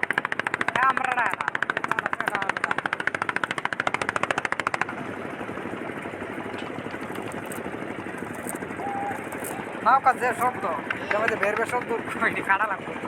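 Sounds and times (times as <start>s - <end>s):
small engine puttering: 0.0s - 13.0s.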